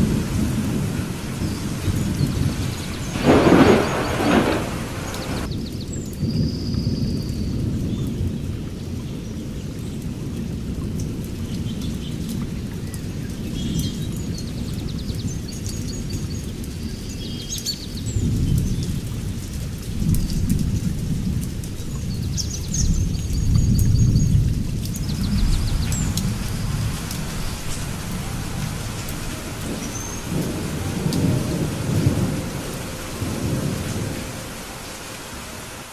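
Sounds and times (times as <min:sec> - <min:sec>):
thunder rumbling: 0:00.0 - 0:05.6, 0:18.2 - 0:35.9
rain: 0:00.0 - 0:35.9.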